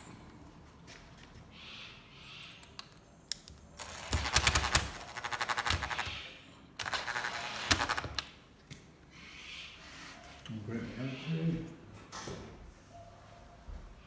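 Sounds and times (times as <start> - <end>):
cordless drill driving screws: 3.8 - 6.2, 6.8 - 8.2.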